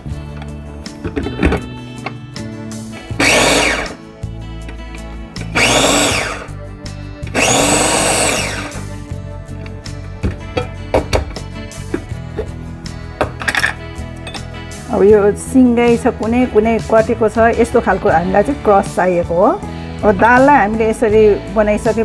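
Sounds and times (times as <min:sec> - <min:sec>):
food chopper whirring: 0:00.0 - 0:12.6
background music: 0:00.0 - 0:22.0.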